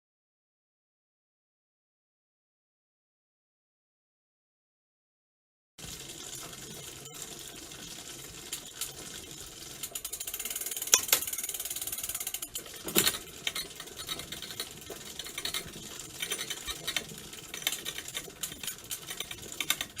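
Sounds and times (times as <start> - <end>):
bicycle chain rubbing: 9.6 - 20.0.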